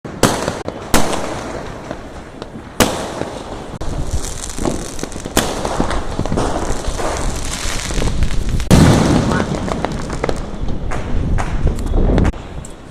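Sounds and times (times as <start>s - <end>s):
firework bangs: 0.1s - 12.6s
firework crackling pops: 0.1s - 12.8s.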